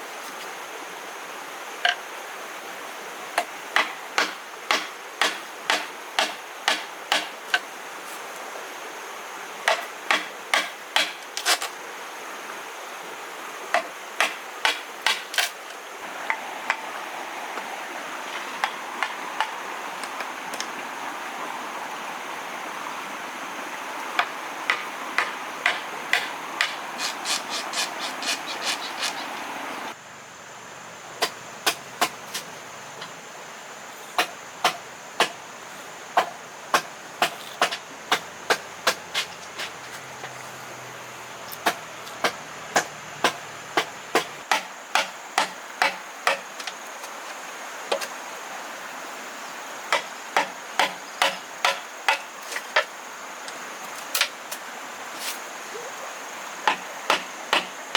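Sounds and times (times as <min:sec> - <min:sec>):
steady background hiss: 0:00.0 - 0:57.9
hand tool striking bamboo: 0:03.4 - 0:07.7, 0:09.7 - 0:11.7, 0:13.8 - 0:15.7, 0:24.2 - 0:29.2, 0:34.2 - 0:35.4, 0:36.2 - 0:40.4, 0:41.6 - 0:46.8, 0:49.9 - 0:52.9, 0:56.7 - 0:57.7.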